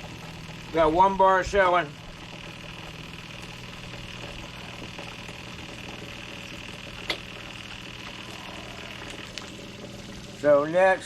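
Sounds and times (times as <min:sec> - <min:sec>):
scooter engine idling: 0:00.0 - 0:01.2.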